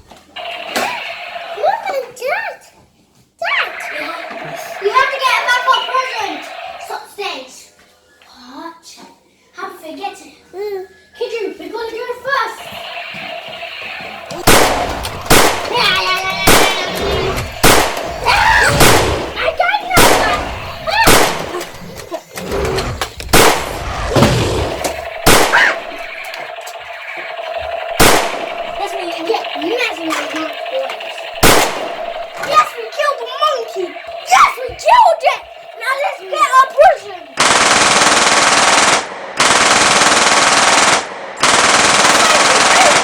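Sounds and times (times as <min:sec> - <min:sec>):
gunshots with ringing tail: 0:12.6 - 0:43.0
machine-gun fire: 0:12.6 - 0:43.0.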